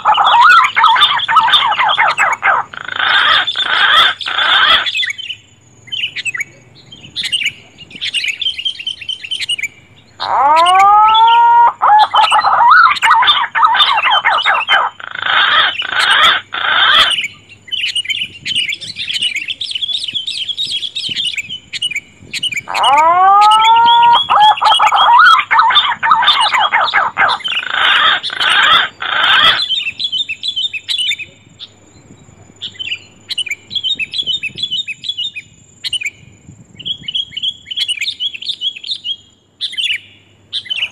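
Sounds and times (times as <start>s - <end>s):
rising whistled bird call: 0.0s - 5.3s, 7.2s - 31.3s
loud rapid bird chirping: 0.0s - 40.9s.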